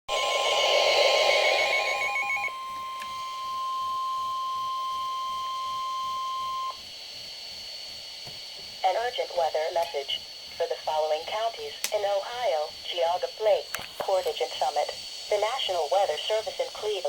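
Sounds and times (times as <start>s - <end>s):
hissy pulsing noise: 0.1s - 3.0s, 6.8s - 17.0s
steady high warning tone: 0.1s - 8.1s, 8.8s - 17.0s
faint radio hiss: 7.3s - 17.0s.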